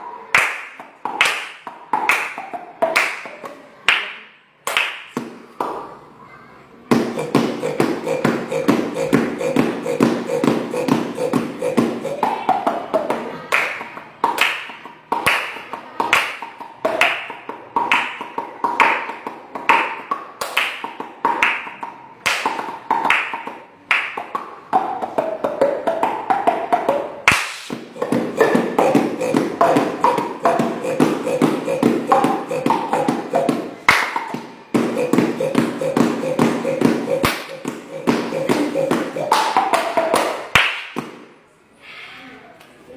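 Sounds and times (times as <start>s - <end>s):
child beatboxing: 6.9s - 14.0s, 27.3s - 41.2s
hummed tone: 7.0s - 12.2s, 27.8s - 39.5s.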